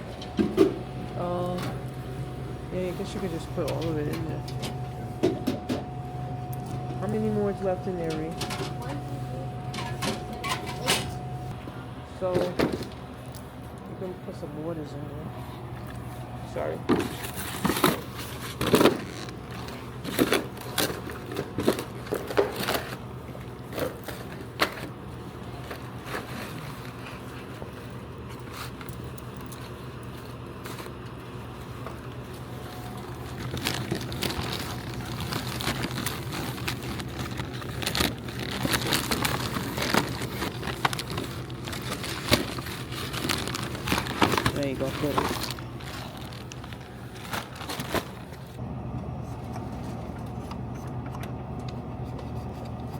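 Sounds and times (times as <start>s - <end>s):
steady low hum: 0.0s - 52.9s
plastic packaging crinkling: 29.6s - 48.6s.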